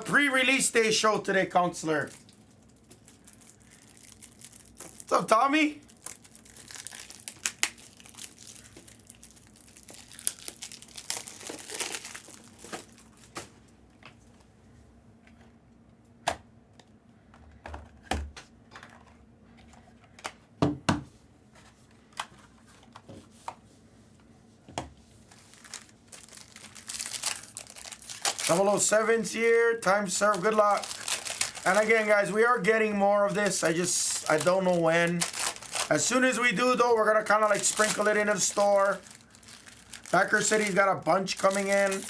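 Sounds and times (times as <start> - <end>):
plastic and foil crinkling and tearing: 0.0 - 13.5, 25.2 - 42.0.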